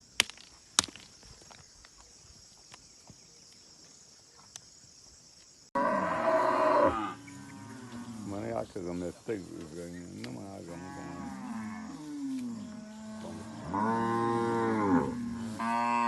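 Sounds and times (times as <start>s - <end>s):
cow mooing: 5.8s - 8.2s, 10.6s - 16.0s.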